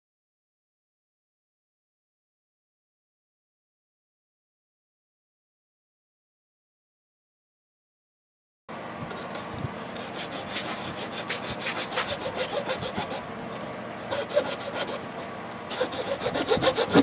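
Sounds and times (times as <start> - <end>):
hand tool rasping: 9.9 - 13.2, 14.0 - 17.0.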